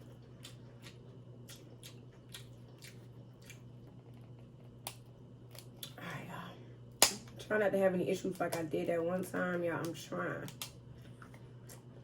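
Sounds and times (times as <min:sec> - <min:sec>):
chewing seafood with wet smacks: 0:00.0 - 0:05.0.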